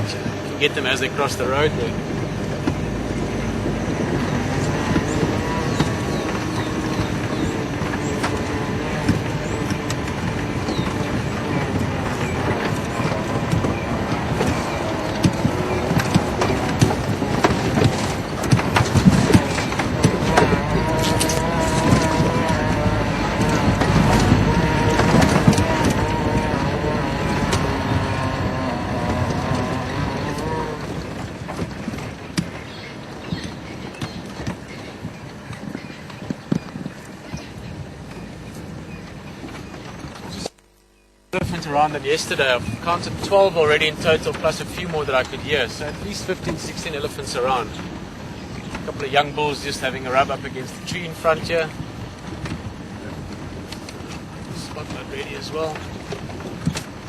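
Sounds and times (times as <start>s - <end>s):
vehicle engine on dirt track: 0.0s - 40.5s, 41.3s - 57.0s
knocks and rattles: 1.0s - 38.3s.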